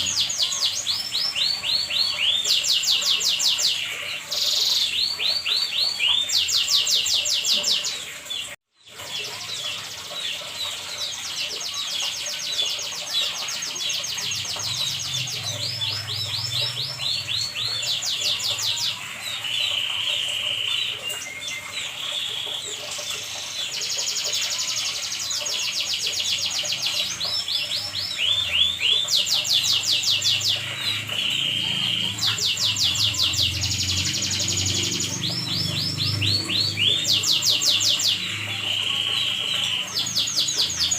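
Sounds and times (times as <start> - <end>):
canary singing trills: 0.0 - 40.9.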